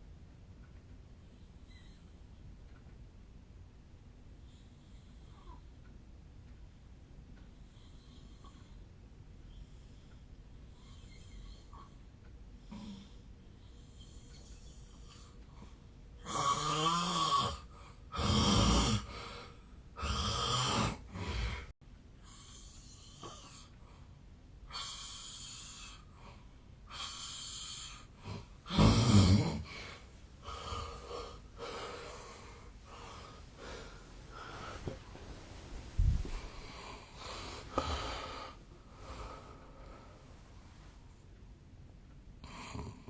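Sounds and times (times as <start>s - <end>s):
man snoring heavily: 16.2s - 21.7s, 26.9s - 33.3s
uneven breathing: 29.6s - 40.5s.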